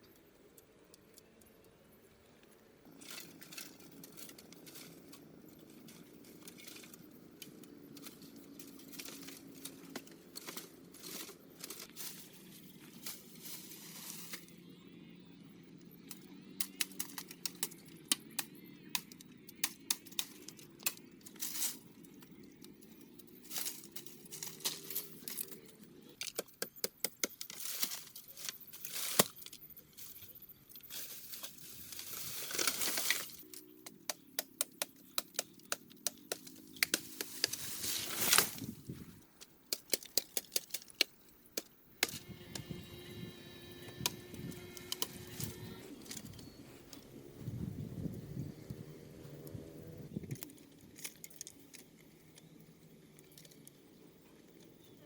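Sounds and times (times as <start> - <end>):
sharp clicks and crackling: 15.9 - 38.6, 39.2 - 43.0, 43.8 - 47.1, 50.2 - 53.8
steady low hum: 41.2 - 55.0.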